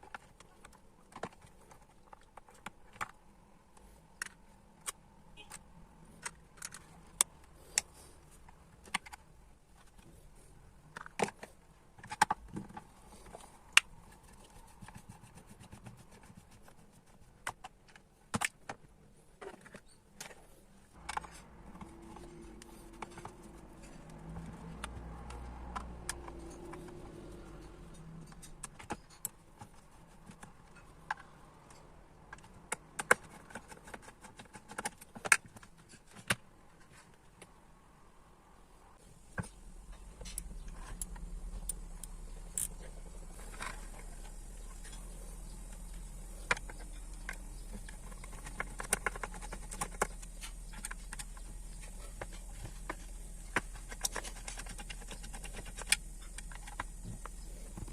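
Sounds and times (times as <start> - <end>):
tools and plastic parts clicking: 0.0 - 37.6, 39.4 - 57.9
low hum: 39.0 - 57.9.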